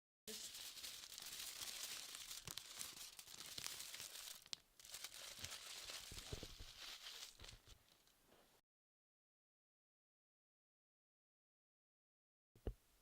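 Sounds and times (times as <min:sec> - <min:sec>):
material crinkling and crackling: 0:00.3 - 0:08.5.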